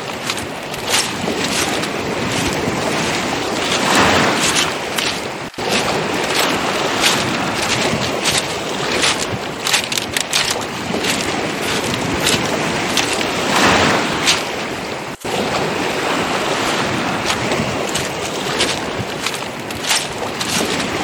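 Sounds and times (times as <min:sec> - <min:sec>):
footsteps crunching on pebbles: 0:00.0 - 0:15.5, 0:16.1 - 0:21.0
waves washing: 0:00.0 - 0:21.0
wind buffeting microphone: 0:00.0 - 0:21.0.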